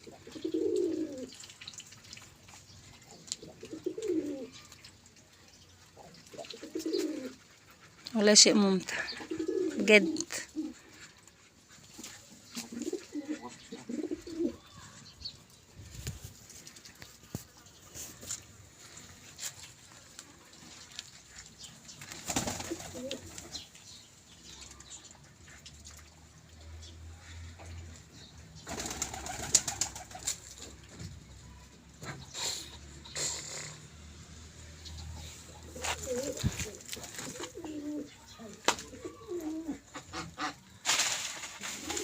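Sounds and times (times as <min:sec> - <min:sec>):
pigeons cooing: 0:00.0 - 0:01.6, 0:02.9 - 0:04.8, 0:05.5 - 0:08.0, 0:08.8 - 0:15.0, 0:20.1 - 0:25.6, 0:26.8 - 0:31.0, 0:32.1 - 0:40.6, 0:41.6 - 0:42.0
wings flapping: 0:22.0 - 0:23.6, 0:28.6 - 0:30.7, 0:35.8 - 0:37.6, 0:40.8 - 0:42.0
scuffling: 0:35.5 - 0:37.7.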